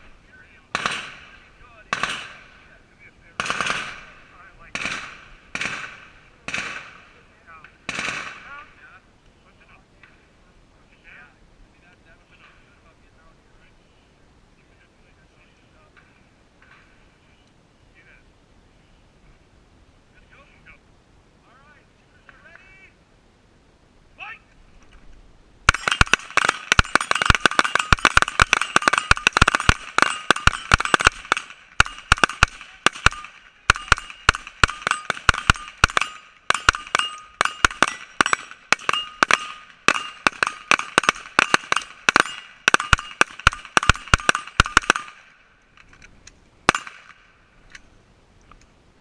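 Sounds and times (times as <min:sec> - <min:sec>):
rifle shots: 0:00.7 - 0:07.2, 0:07.8 - 0:08.7, 0:25.7 - 0:45.4, 0:46.6 - 0:47.4
steady ringing tone: 0:25.7 - 0:32.4, 0:33.0 - 0:45.1.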